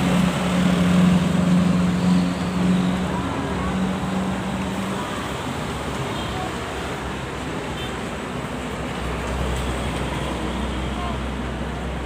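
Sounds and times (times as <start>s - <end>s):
heavy vehicle engine drone: 0.0s - 6.0s
highway traffic noise: 0.0s - 12.0s.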